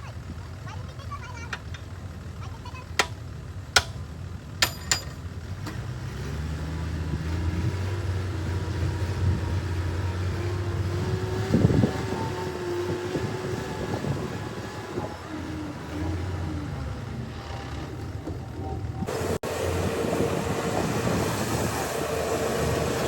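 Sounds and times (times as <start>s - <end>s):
heavy diesel engine under load: 0.0s - 23.0s
sharp metal clanks: 4.6s - 5.3s.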